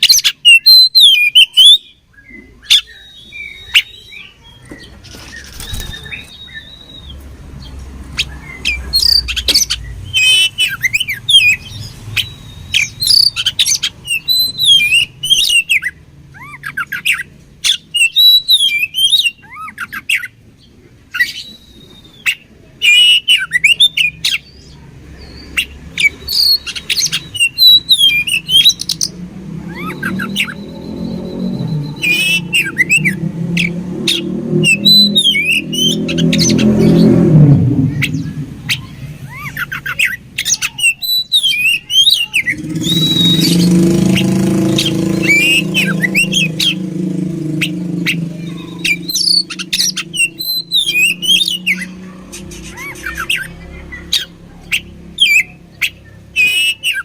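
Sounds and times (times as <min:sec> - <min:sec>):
bird singing chattering notes: 0:00.0 - 0:57.0
long level bird whistles: 0:05.4 - 0:07.2, 0:08.2 - 0:20.3, 0:25.3 - 0:37.1, 0:38.0 - 0:46.8, 0:47.6 - 0:53.5, 0:54.1 - 0:57.0.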